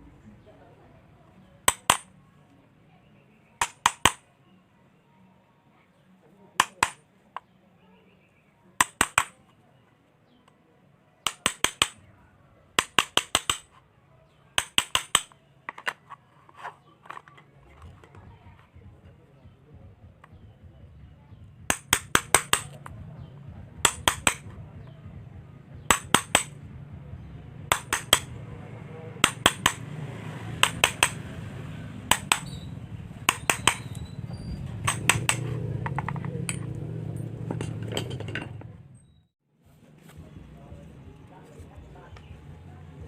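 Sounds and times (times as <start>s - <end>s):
sharp clinking taps: 23.8s - 25.2s, 27.7s - 28.4s, 29.2s - 30.0s, 30.6s - 31.3s, 32.1s - 38.8s.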